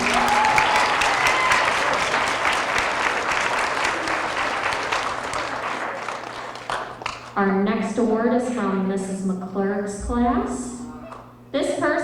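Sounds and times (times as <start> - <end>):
children clapping: 0.0 - 7.4.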